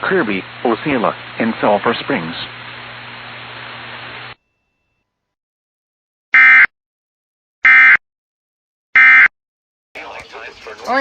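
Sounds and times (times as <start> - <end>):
radio receiver hiss and hum: 0.0 - 4.4.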